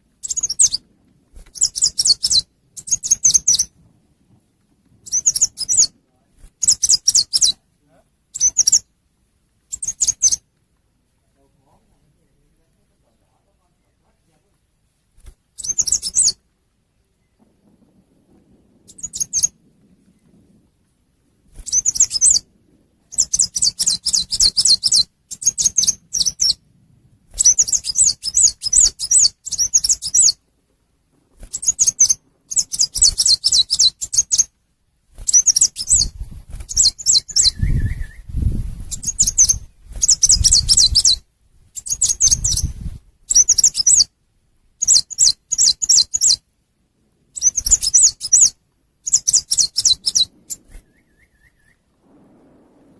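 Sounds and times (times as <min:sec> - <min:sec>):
songbird rapid high chirping: 0:00.2 - 0:00.9, 0:01.5 - 0:03.8, 0:05.0 - 0:06.0, 0:06.6 - 0:07.7, 0:08.3 - 0:08.9, 0:09.7 - 0:10.4, 0:15.5 - 0:16.4, 0:18.8 - 0:20.4, 0:21.6 - 0:26.6, 0:27.3 - 0:30.4, 0:31.4 - 0:34.5, 0:35.2 - 0:41.2, 0:41.8 - 0:44.1, 0:44.8 - 0:46.5, 0:47.4 - 0:51.8
low rumble: 0:16.9 - 0:21.5, 0:50.1 - 0:52.9.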